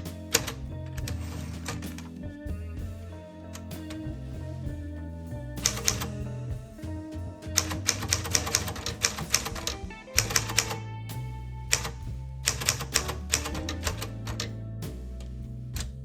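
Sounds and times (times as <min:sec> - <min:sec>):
background music with bass: 0:00.0 - 0:16.0
typewriter clacking: 0:07.6 - 0:10.8, 0:11.7 - 0:14.4.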